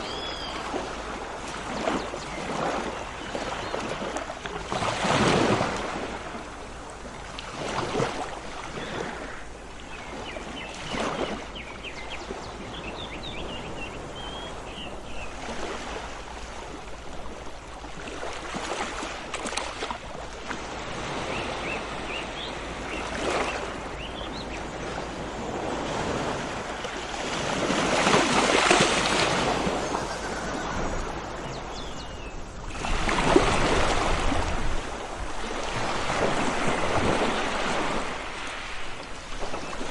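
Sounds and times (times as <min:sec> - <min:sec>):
sea waves washing in: 0:15.3 - 0:39.9
small birds chirping: 0:28.4 - 0:33.0.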